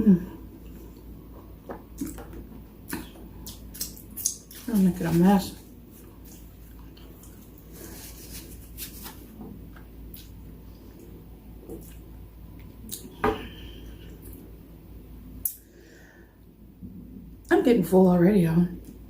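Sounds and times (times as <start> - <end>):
food handling noises: 0.6 - 12.0
wet mouth clicks while eating: 2.9 - 4.5.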